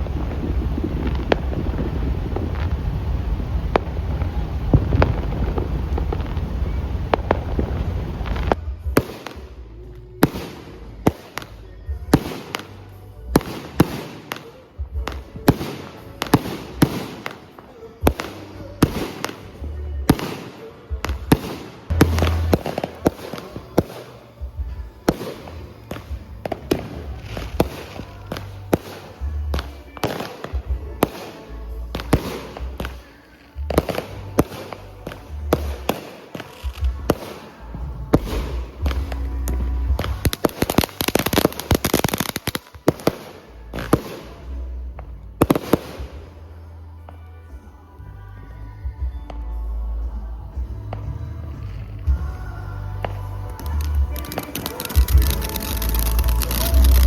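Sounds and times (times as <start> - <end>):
fireworks banging: 0.0 - 46.6, 50.6 - 57.0
music with heavy bass: 18.0 - 33.0, 33.6 - 57.0.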